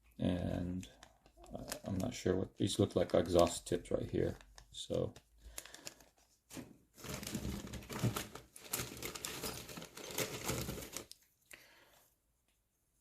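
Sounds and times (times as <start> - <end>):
plastic packaging crinkling: 0.9 - 6.3, 7.0 - 11.3.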